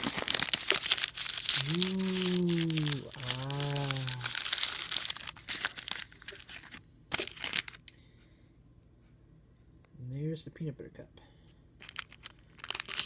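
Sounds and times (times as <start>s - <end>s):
candy wrapper crinkling: 0.0s - 7.8s, 11.8s - 13.0s
person saying ooh: 1.5s - 4.4s.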